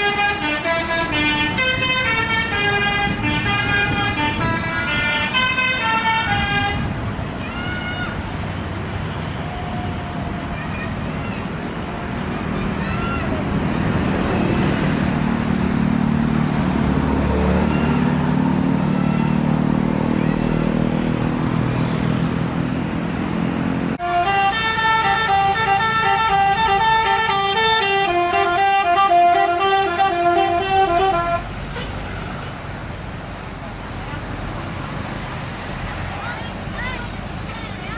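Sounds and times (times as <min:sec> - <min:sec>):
multi-tone bus horn jingle: 0:00.0 - 0:07.0, 0:24.0 - 0:32.0
bus engine running: 0:00.0 - 0:37.9.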